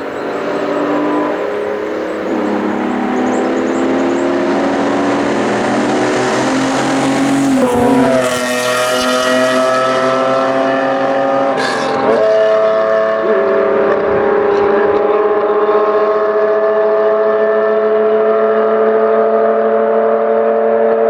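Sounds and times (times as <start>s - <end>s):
car exhaust accelerating: 0.0s - 19.4s.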